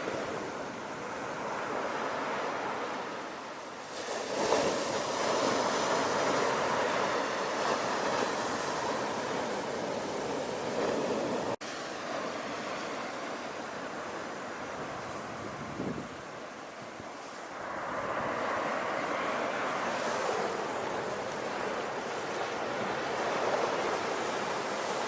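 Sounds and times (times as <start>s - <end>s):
sea waves washing on shore: 0.0s - 25.0s
wave breaking: 3.8s - 13.9s.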